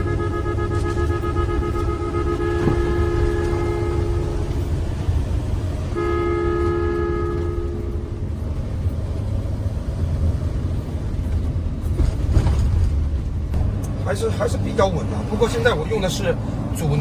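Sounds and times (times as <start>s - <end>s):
two-tone vehicle horn: 0.0s - 5.1s, 5.8s - 8.4s
van road rumble on gravel: 0.0s - 17.0s.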